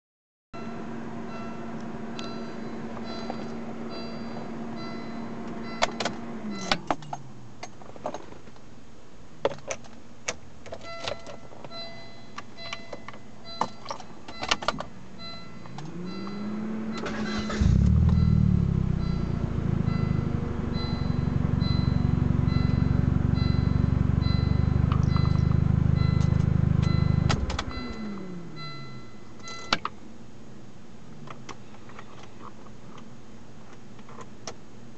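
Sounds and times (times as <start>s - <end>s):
electrical whine: 15.1s - 29.5s
loud low rumble: 17.6s - 29.0s.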